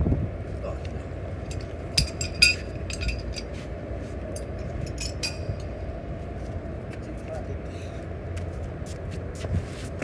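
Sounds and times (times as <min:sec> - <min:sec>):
steady low rumble: 0:00.0 - 0:09.7
metal tools clinking: 0:01.5 - 0:03.6, 0:04.3 - 0:06.0.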